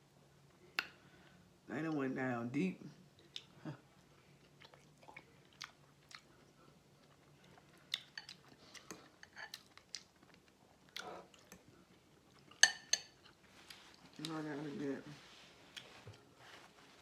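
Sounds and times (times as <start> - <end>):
close-up chewing: 3.2 - 14.4, 15.5 - 16.4.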